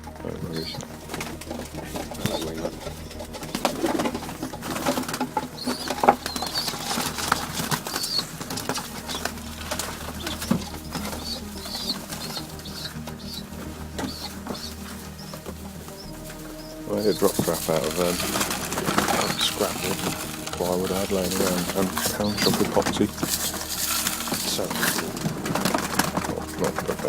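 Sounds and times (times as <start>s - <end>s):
pigeons flapping wings: 0.0s - 27.0s.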